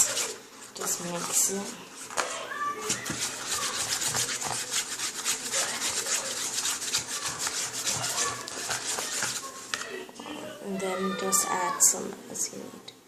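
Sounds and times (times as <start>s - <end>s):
spoon scraping a bowl: 0.0s - 1.6s, 2.9s - 9.8s.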